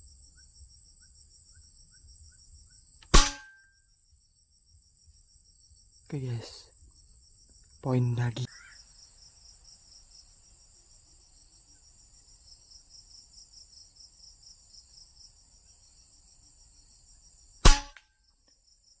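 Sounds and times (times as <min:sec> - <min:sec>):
insects chirring: 0:00.0 - 0:19.0
gunshot: 0:03.0 - 0:03.6, 0:17.6 - 0:18.0.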